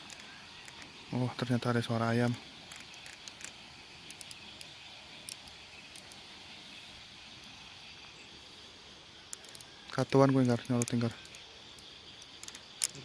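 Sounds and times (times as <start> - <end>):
small scattered clicks: 0.0 - 1.0, 2.6 - 6.2, 9.3 - 13.0
faint background hiss: 0.0 - 13.0.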